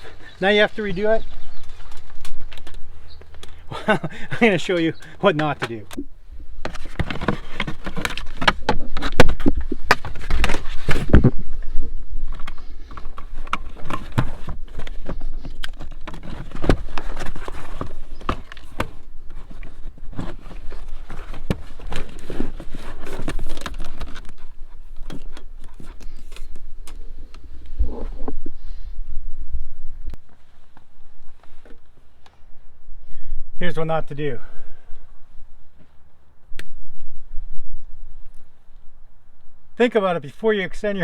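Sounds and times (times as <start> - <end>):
handling clicks scrapes and rattles: 6.6 - 11.2, 12.2 - 27.0.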